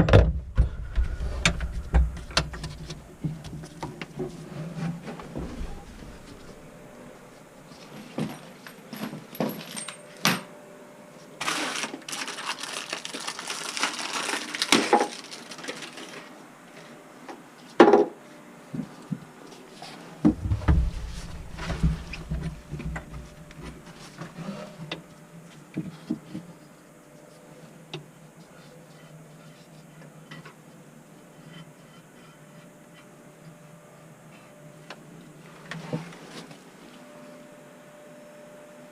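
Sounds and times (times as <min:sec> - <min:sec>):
low rumble: 0:00.0 - 0:04.5, 0:05.2 - 0:07.4, 0:20.3 - 0:24.0
rustling: 0:00.5 - 0:07.5, 0:19.8 - 0:24.8.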